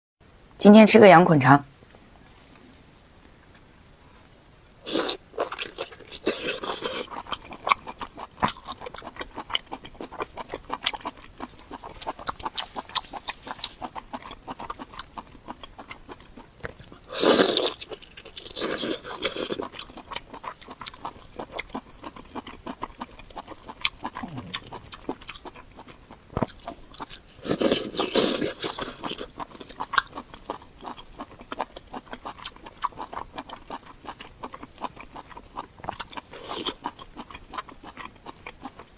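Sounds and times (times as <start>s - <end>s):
person chewing and crunching: 4.8s - 38.9s
wet mouth clicks: 23.3s - 25.4s.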